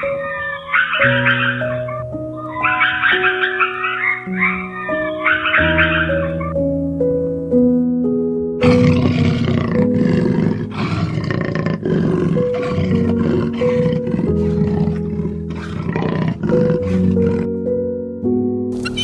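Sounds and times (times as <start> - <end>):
soft background music: 0.0 - 19.0
large animal roaring: 8.6 - 17.6.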